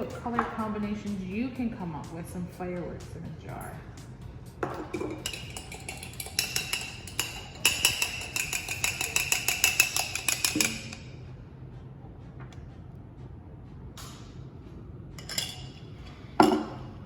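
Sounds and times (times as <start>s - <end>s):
utensil clinking against glass: 4.6s - 11.1s, 15.2s - 16.8s.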